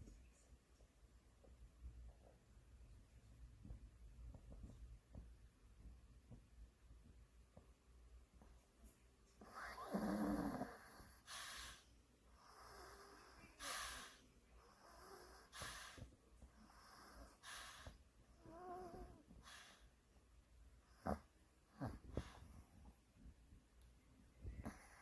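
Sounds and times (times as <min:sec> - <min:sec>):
pet snoring: 0:09.4 - 0:11.8, 0:12.4 - 0:19.8, 0:20.9 - 0:22.4, 0:24.5 - 0:25.0
sharp snorts: 0:13.6 - 0:14.2, 0:15.2 - 0:16.1.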